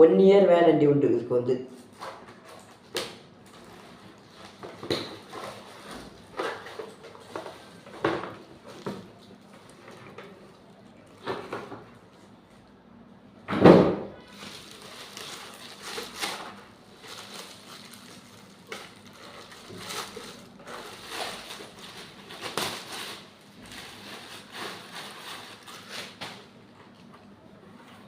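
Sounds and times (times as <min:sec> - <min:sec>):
packaging rustling and crinkling: 0:01.8 - 0:12.0, 0:14.3 - 0:27.0.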